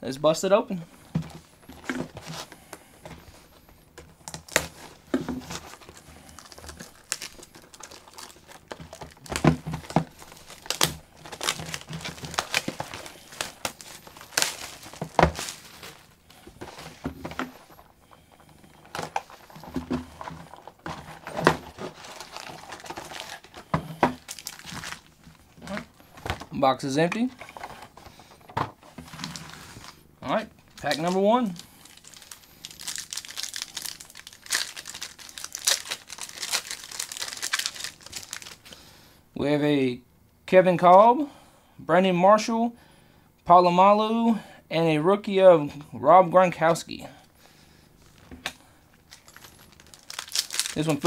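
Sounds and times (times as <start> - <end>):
plastic wrapping tearing and crinkling: 4.2 - 17.8, 18.8 - 26.5, 30.7 - 38.8, 49.0 - 51.0.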